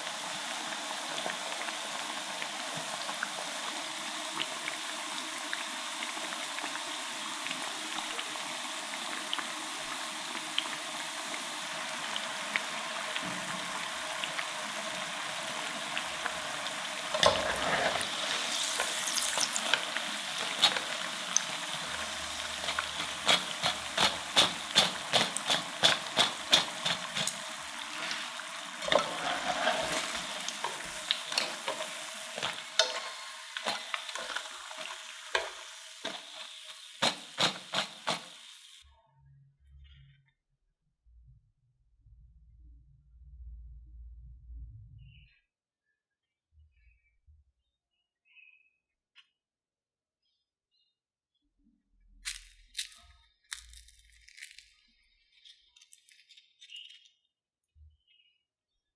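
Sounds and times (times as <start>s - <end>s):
oil sizzling in a pan: 0.0s - 38.8s
sharp crackles and pops: 52.2s - 57.1s.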